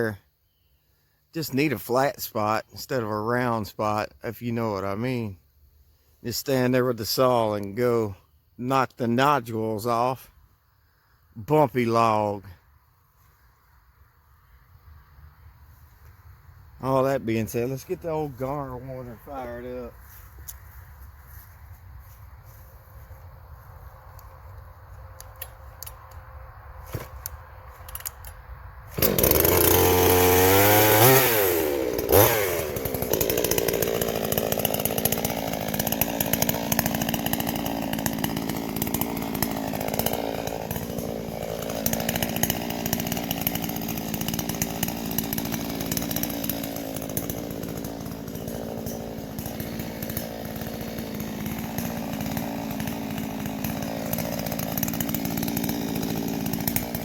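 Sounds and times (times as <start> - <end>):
chainsaw cutting log: 16.8 - 26.0, 26.8 - 28.3, 28.9 - 57.0.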